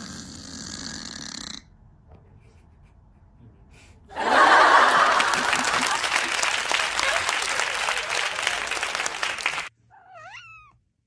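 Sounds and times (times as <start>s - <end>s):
cat snoring: 0.0s - 1.7s
applause: 4.3s - 9.7s.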